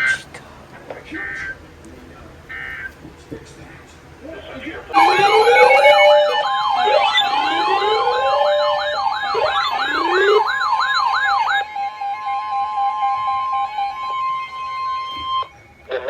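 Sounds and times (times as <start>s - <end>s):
electronic siren sweeps wailing: 4.9s - 16.0s
rising whoops: 5.0s - 11.6s
steady alert tones: 5.0s - 11.7s.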